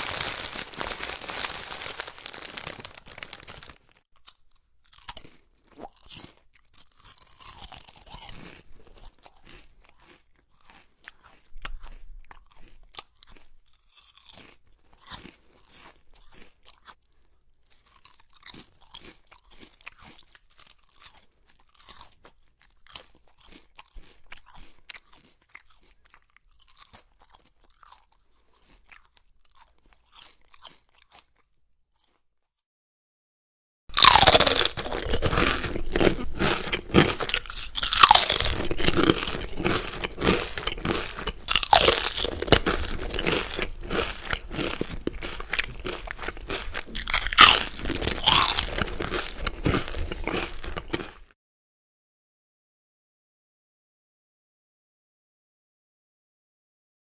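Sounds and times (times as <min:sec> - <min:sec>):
potato chips being chewed: 0:00.0 - 0:32.6, 0:33.9 - 0:51.4.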